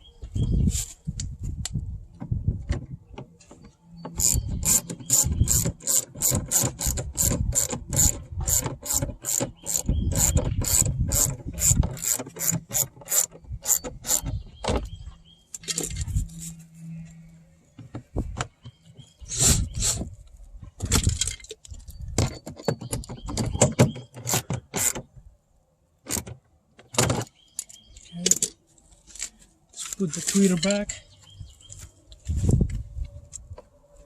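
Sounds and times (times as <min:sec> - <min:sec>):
ratchet tool clicking: 0:04.2 - 0:14.3
knocks and handling noise: 0:11.2 - 0:19.1.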